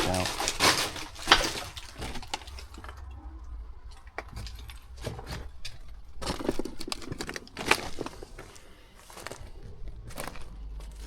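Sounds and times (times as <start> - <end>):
cracks and scrapes: 0.0 - 11.0
footsteps crunching over rubble: 0.0 - 11.0
low steady rumble: 0.0 - 11.0.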